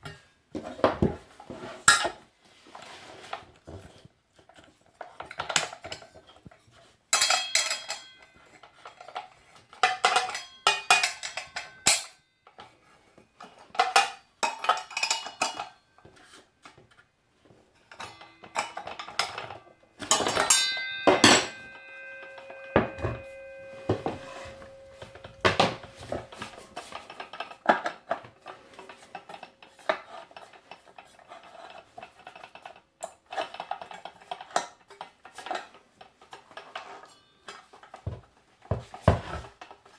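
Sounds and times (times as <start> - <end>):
tool parts clinking and knocking: 4.4 - 12.8, 13.4 - 17.0, 17.8 - 39.9
metal piece ringing: 17.9 - 26.9
loud metallic hits: 20.0 - 26.3.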